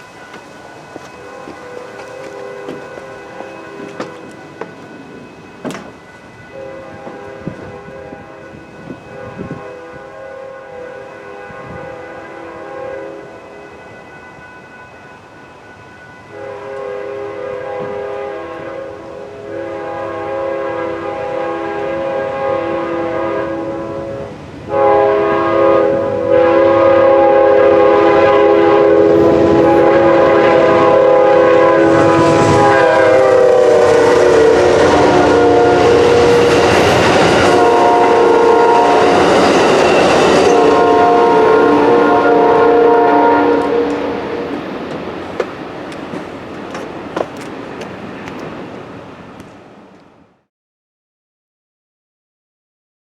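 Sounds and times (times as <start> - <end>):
train wheels clattering on rails: 0.0 - 7.8, 31.9 - 42.2, 43.6 - 50.1
train air horn blasts: 1.0 - 4.8, 5.9 - 13.8, 16.2 - 46.3.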